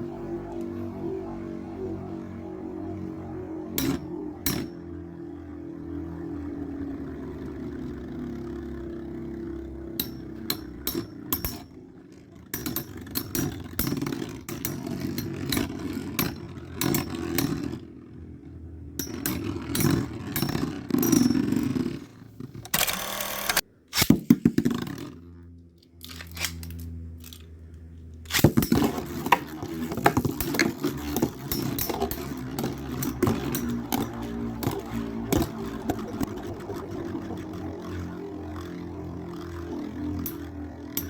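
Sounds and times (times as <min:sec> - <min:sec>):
spinning tops whirring: 0:00.0 - 0:25.3, 0:28.2 - 0:41.0
spinning tops clashing: 0:19.0 - 0:22.0, 0:28.3 - 0:38.1.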